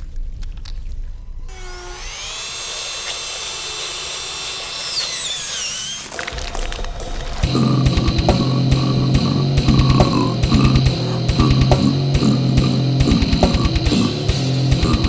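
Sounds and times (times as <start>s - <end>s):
power drill whining: 1.5s - 6.4s
low rumble: 6.4s - 15.0s.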